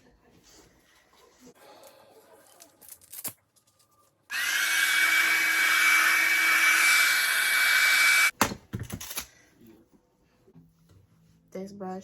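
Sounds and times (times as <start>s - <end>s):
hair dryer whistling: 4.3s - 8.3s.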